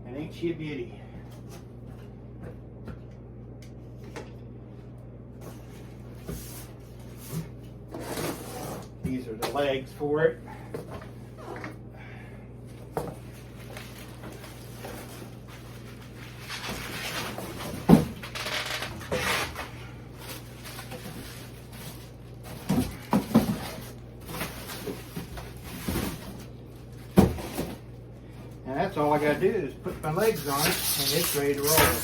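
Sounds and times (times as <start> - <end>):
packing material rustling: 13.4 - 27.6, 30.0 - 32.0.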